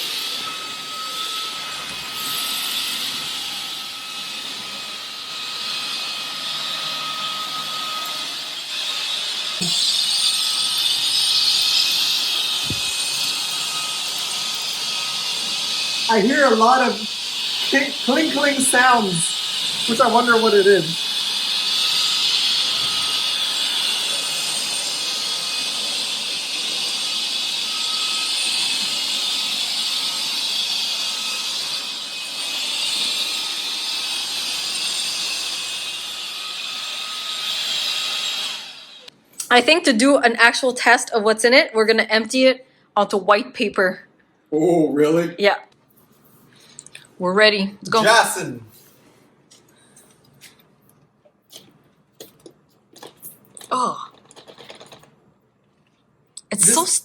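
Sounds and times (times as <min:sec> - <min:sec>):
stick vacuum hissing: 0:07.0 - 0:39.1.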